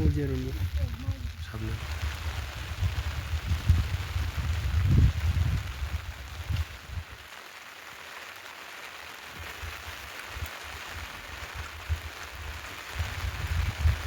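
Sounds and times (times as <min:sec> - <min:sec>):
steady rain hissing: 0:00.0 - 0:14.0.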